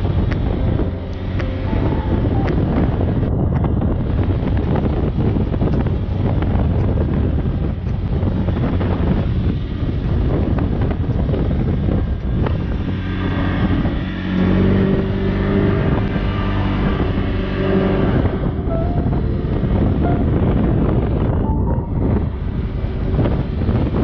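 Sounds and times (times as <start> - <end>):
quad bike engine running: 0.0 - 18.7
wind buffeting microphone: 0.0 - 24.0.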